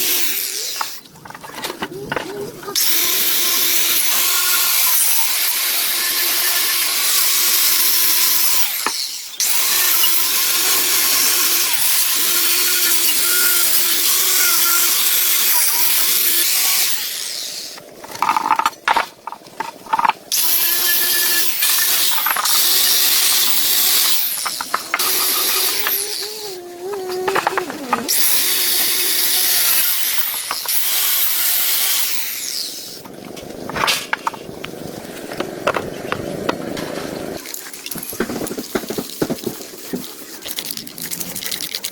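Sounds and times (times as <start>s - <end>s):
electric power tool running: 2.8s - 17.8s, 20.3s - 33.0s.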